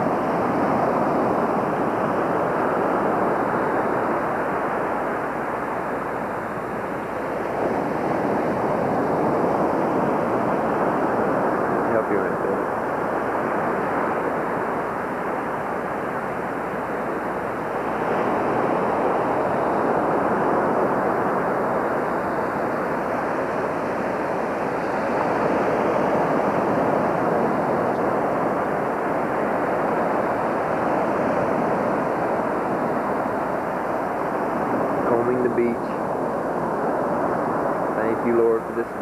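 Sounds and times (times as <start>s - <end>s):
ocean surf washing ashore: 0.0s - 39.0s.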